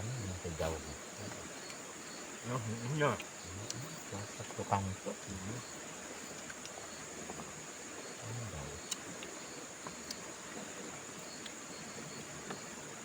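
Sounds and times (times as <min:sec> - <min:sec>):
low murmur of a voice: 0:00.0 - 0:01.5, 0:02.4 - 0:05.6, 0:08.2 - 0:08.9
high-pitched insect chorus: 0:00.0 - 0:13.0
faint clicks: 0:03.1 - 0:04.7, 0:06.3 - 0:07.6, 0:08.7 - 0:10.7, 0:11.3 - 0:11.6.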